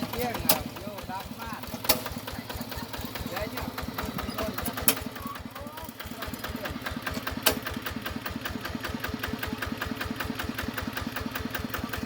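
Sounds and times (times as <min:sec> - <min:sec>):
small engine knocking: 0:00.0 - 0:12.0.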